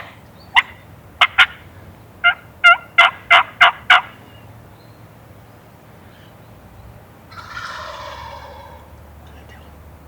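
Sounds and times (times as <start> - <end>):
turkey yelping: 2.2 - 4.1, 7.3 - 9.0.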